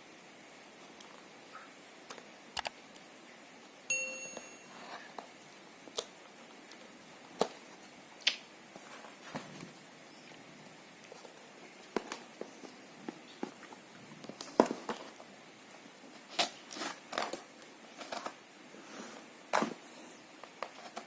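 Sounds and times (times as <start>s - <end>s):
short clear ping: 3.9s - 4.8s
clicks and taps of handling packaging: 11.1s - 15.3s.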